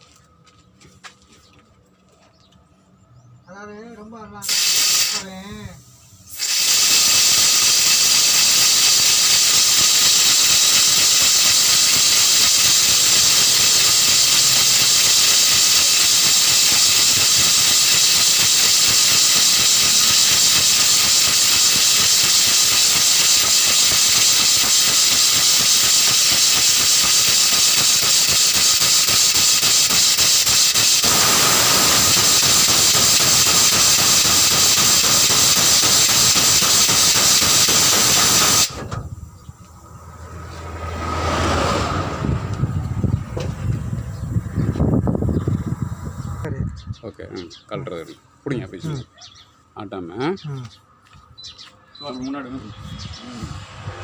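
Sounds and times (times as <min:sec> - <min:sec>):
compressed air hissing through valve: 0:04.4 - 0:39.2, 0:43.2 - 0:46.4.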